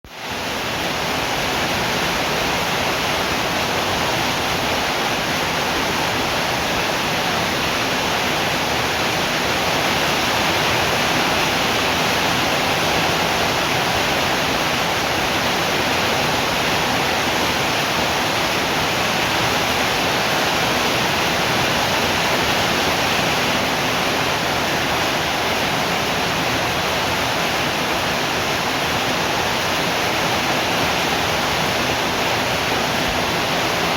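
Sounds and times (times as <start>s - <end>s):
steady rain: 0.1s - 33.9s.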